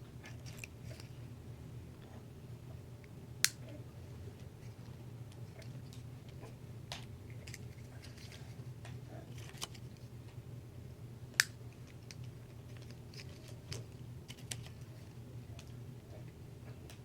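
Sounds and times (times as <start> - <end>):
steady low hum: 0.0 - 17.0
plastic straw clicks and rustles: 4.4 - 8.5, 9.3 - 10.1, 11.4 - 14.9.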